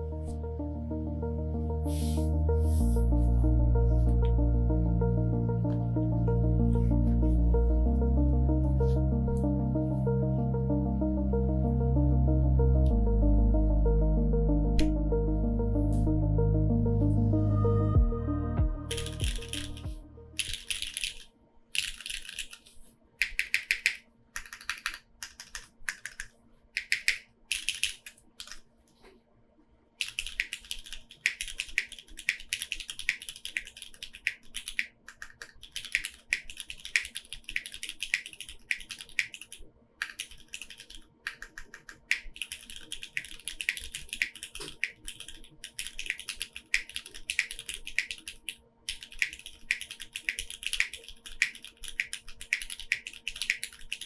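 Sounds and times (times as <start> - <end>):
mechanical keyboard typing: 18.9 - 28.7, 30.0 - 54.0.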